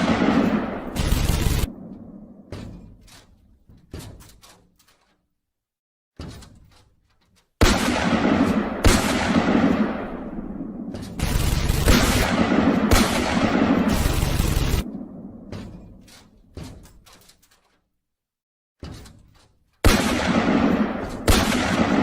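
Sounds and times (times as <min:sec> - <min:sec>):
explosion blasts: 0:00.0 - 0:02.5, 0:07.8 - 0:15.5
gunfire: 0:00.0 - 0:02.5, 0:07.6 - 0:15.7, 0:19.8 - 0:22.0.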